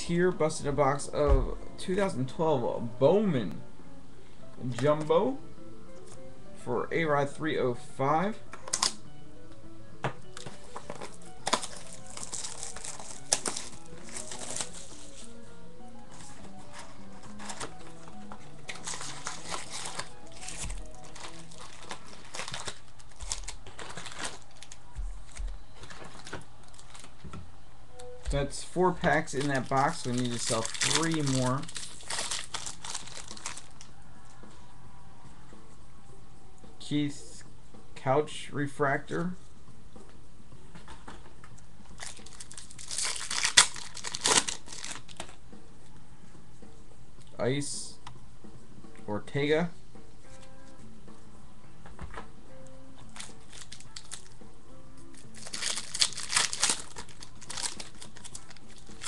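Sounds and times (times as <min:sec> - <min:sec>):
background music: 0:00.0 - 0:59.0
wrappers crinkling and tearing: 0:10.4 - 0:15.4, 0:16.1 - 0:27.2, 0:29.0 - 0:33.9, 0:42.0 - 0:45.4, 0:53.1 - 0:54.4, 0:55.1 - 0:59.0.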